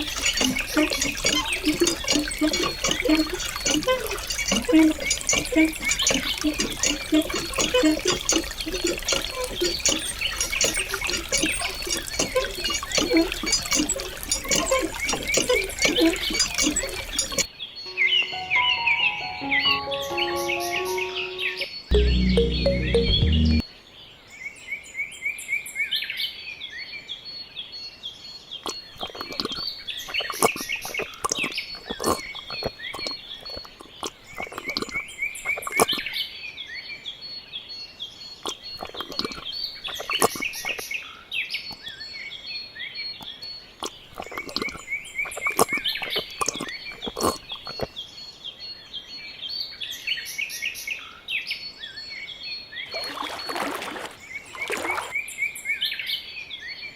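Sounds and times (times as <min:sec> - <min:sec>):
birds chirping and twittering: 0:00.0 - 0:23.6.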